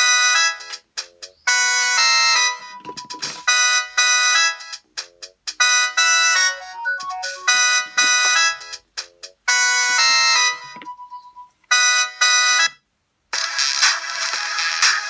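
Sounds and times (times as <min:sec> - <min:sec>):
phone ringtone chord stabs: 0:05.6 - 0:08.8.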